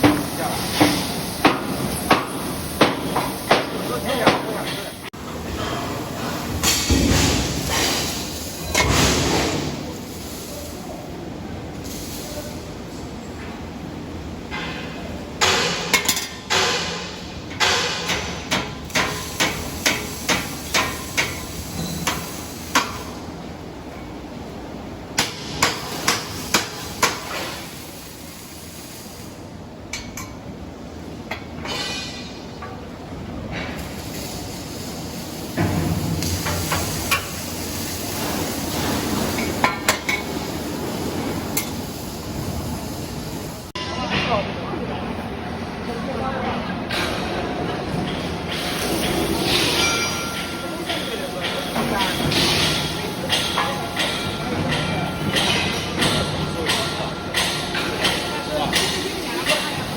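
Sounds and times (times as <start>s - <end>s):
conveyor running: 32.4s - 59.9s.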